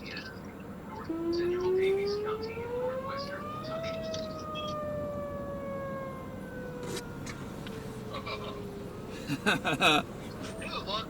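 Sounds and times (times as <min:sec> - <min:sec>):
warning siren wailing: 0:01.0 - 0:11.0.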